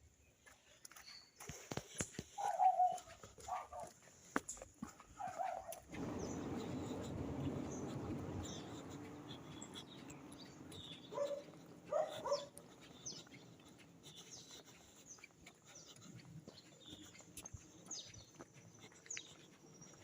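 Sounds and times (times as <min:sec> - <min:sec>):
small birds chirping: 0:00.0 - 0:20.0
dog barking: 0:02.4 - 0:03.9, 0:05.2 - 0:05.9, 0:11.0 - 0:12.6.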